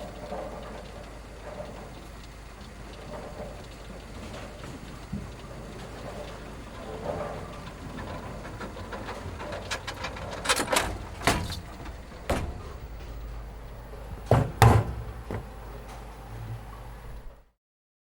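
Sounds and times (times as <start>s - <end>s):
steady low hum: 0.0s - 17.5s
sharp knocks or thumps: 14.2s - 15.5s.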